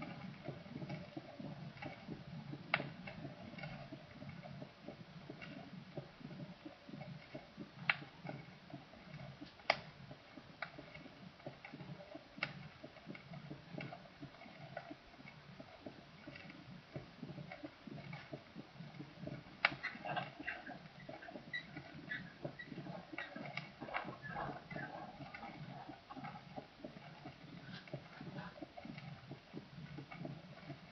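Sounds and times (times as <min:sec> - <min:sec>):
heartbeat thumps through stethoscope: 0:00.0 - 0:30.9
sharp clicks: 0:09.1 - 0:10.0.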